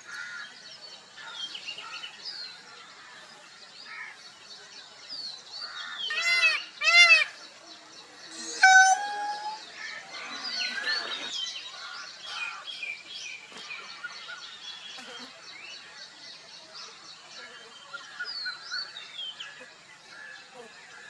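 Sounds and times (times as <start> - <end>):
peacock call: 8.3 - 9.8.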